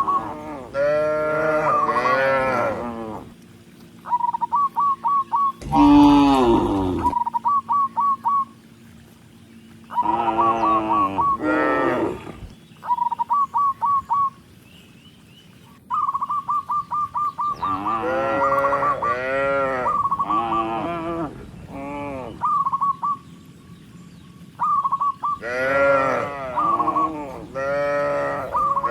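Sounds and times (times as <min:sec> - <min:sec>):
cattle mooing: 0:00.0 - 0:03.4, 0:05.6 - 0:07.2, 0:10.0 - 0:12.5, 0:17.6 - 0:22.4, 0:25.4 - 0:28.9.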